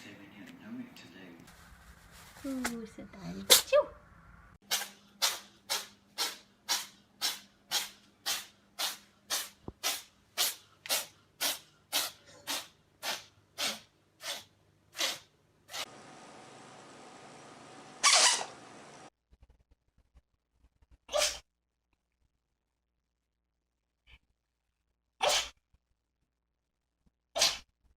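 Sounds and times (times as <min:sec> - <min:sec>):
cat sneezing: 0:04.6 - 0:15.8, 0:21.1 - 0:21.4, 0:25.2 - 0:25.6, 0:27.3 - 0:27.7.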